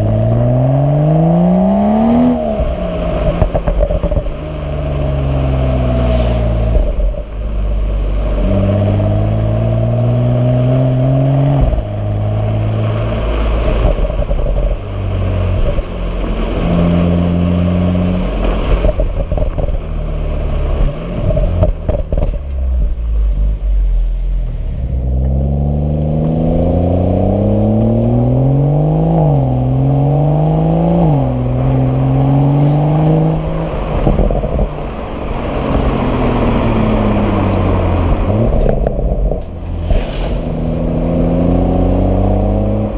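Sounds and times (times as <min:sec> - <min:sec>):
car exhaust accelerating: 0:00.0 - 0:42.9.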